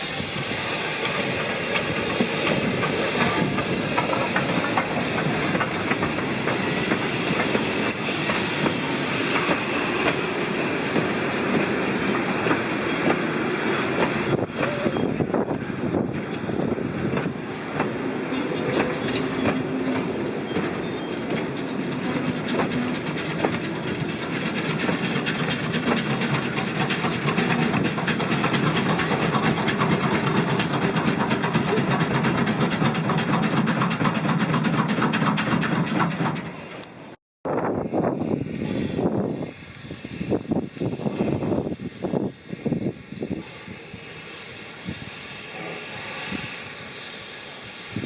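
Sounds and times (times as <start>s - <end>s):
rumble of train carriages: 0.0s - 48.0s
wheels clattering on track: 1.0s - 10.3s, 13.9s - 37.2s.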